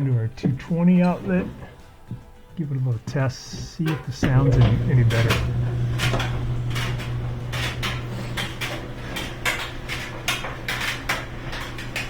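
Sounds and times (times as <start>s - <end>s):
dryer motor humming: 4.2s - 12.0s.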